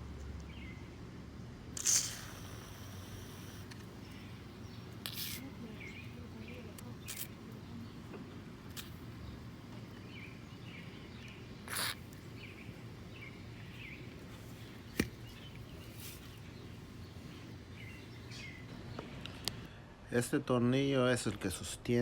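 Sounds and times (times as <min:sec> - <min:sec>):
faint background noise: 0:00.0 - 0:22.0
brief hiss: 0:01.8 - 0:03.7
small birds chirping: 0:02.1 - 0:19.7.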